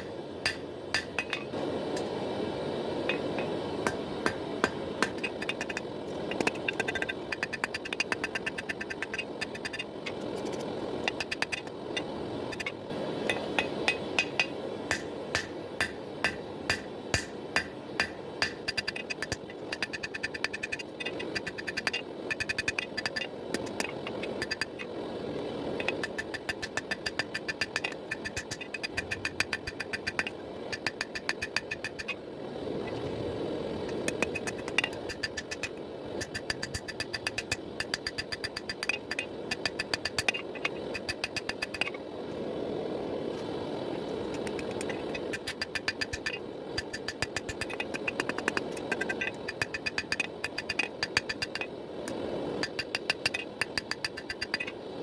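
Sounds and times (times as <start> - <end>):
steady rushing noise: 0.0 - 55.0.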